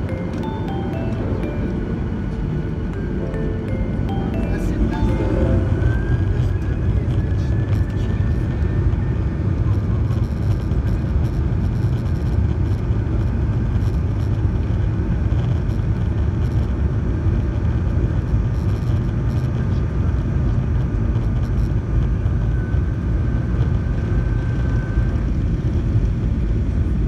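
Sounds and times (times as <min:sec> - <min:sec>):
faint whine: 0:00.0 - 0:14.8
jet engine rumble in cabin: 0:04.5 - 0:27.0.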